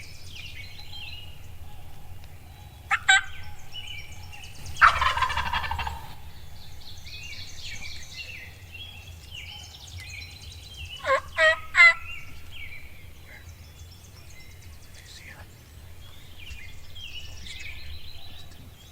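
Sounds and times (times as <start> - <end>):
songbirds chirping: 0.0 - 18.9
loud turkey yelps: 0.8 - 6.3, 11.0 - 12.5
turkey gobble: 0.8 - 6.9, 11.0 - 12.4.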